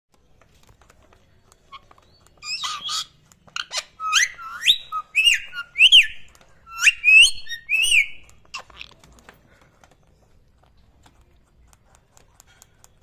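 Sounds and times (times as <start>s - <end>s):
parrot whistling: 2.4s - 8.6s
parrot squawking: 2.4s - 9.0s.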